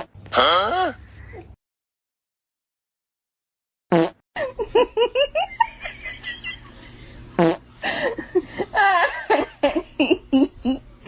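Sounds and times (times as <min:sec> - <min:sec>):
fart-like blast: 0:03.9 - 0:04.2, 0:07.4 - 0:07.6.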